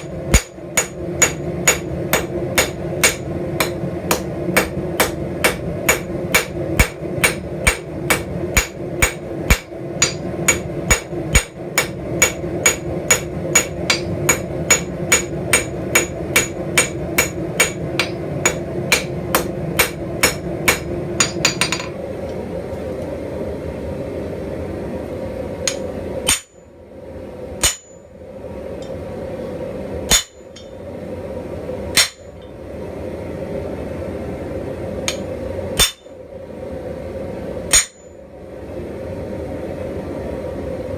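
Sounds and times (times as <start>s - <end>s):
hammer striking steel on anvil: 0.0s - 21.9s, 25.7s - 26.6s, 27.6s - 28.0s, 30.1s - 30.8s, 32.0s - 32.3s, 35.1s - 36.1s, 37.7s - 38.1s
background hum: 0.0s - 40.9s.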